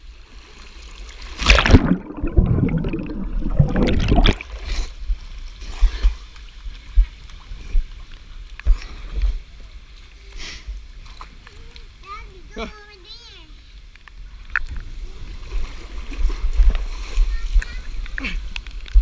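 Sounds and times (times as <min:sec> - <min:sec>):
person splashing in water: 0:01.3 - 0:04.7.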